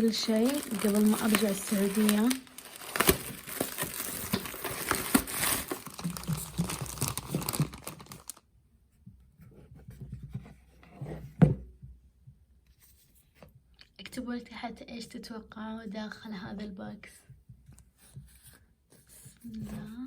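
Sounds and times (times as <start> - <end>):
packaging crinkling and tearing: 0.0 - 8.4.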